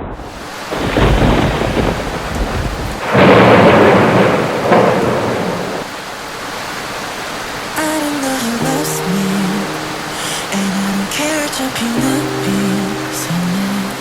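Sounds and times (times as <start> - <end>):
thunder rolling: 0.0 - 5.9
steady rain: 0.0 - 14.0.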